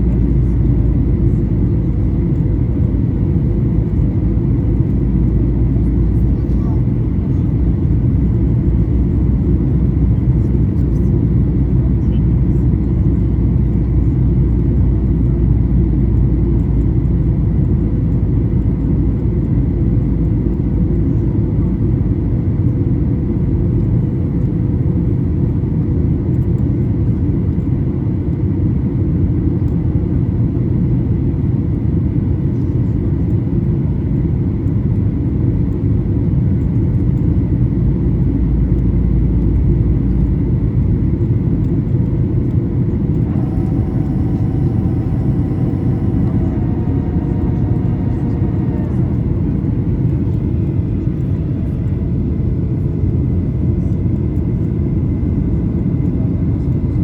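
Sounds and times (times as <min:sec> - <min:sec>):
airplane cabin engine rumble: 0:00.0 - 0:57.0
faint steady tones: 0:38.4 - 0:52.8.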